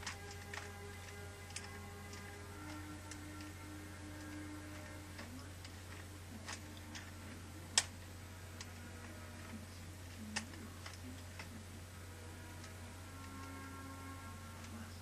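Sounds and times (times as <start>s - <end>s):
plastic cube clicking as turned: 0.0s - 5.8s
steady low hum: 0.0s - 15.0s.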